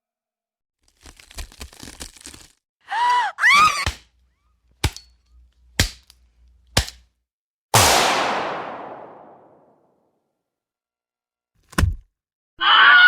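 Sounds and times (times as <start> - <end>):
crackling crunch: 0.9 - 2.6
sharp cracks: 7.8 - 9.7.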